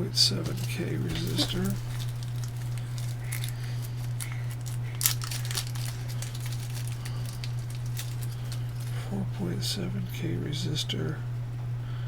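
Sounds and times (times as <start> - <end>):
low electrical hum: 0.0 - 12.0
electronic parts rustling and clicking: 0.4 - 9.0.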